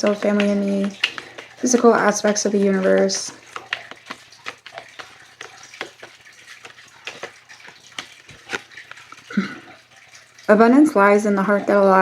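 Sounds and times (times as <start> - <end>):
cards being shuffled: 0.0 - 9.5.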